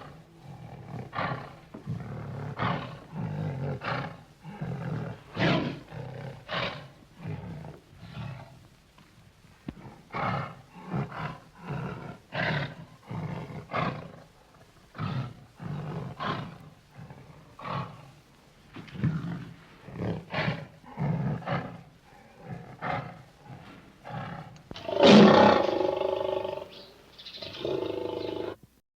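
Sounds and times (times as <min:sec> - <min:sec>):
bear roaring and growling: 0:19.1 - 0:28.6.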